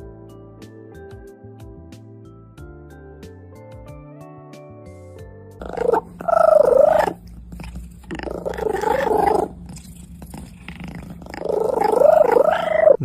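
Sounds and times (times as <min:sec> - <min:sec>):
cat yowling: 0:05.6 - 0:07.2, 0:08.1 - 0:13.0.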